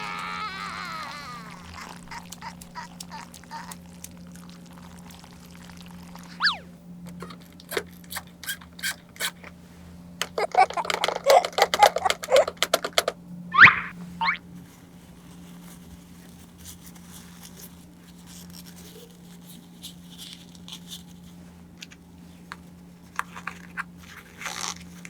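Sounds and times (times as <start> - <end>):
falling squeak: 0.0 - 1.9, 6.4 - 6.7, 13.5 - 14.4
plastic toy pieces clicking: 10.2 - 13.2.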